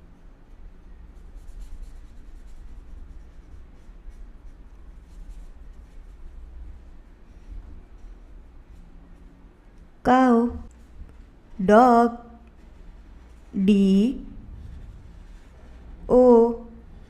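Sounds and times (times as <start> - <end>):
low room rumble: 0.0 - 17.0
writing strokes scratching: 0.5 - 9.8.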